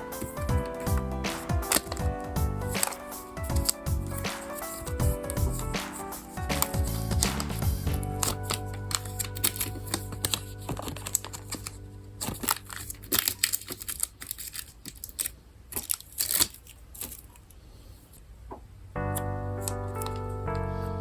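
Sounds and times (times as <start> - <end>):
background music: 0.0 - 13.3, 19.0 - 21.0
plastic packaging crinkling: 8.2 - 17.4.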